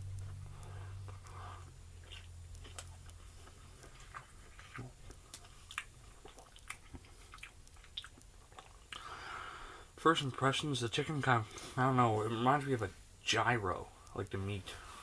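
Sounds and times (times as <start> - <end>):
person chewing food: 0.0 - 9.9.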